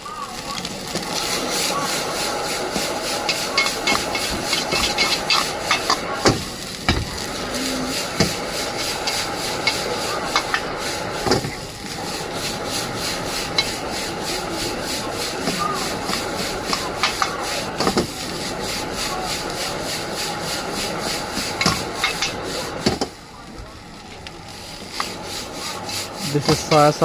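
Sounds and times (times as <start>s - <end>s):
frying hiss: 0.0s - 27.0s
metal spatula scraping a wok: 3.3s - 6.0s, 24.7s - 27.0s.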